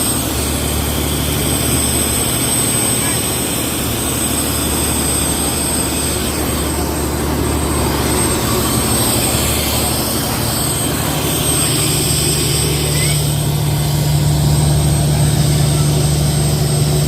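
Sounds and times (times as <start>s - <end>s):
boat engine humming: 0.0s - 17.0s
constant rushing noise: 0.0s - 17.0s.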